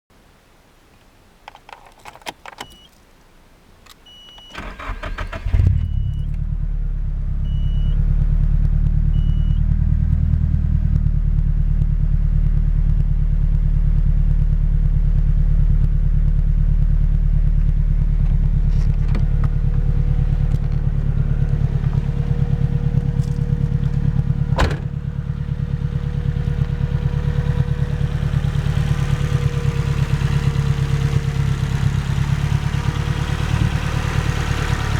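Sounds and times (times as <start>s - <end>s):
car engine cranking and idling: 1.5s - 3.1s, 3.7s - 34.9s
short beeps: 4.0s - 4.8s, 5.5s - 6.4s, 7.4s - 8.0s, 9.1s - 9.6s.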